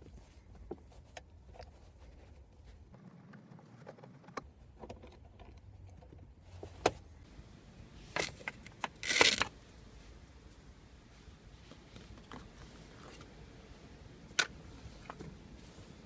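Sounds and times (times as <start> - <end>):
plastic scraping rattle: 3.0 - 5.6.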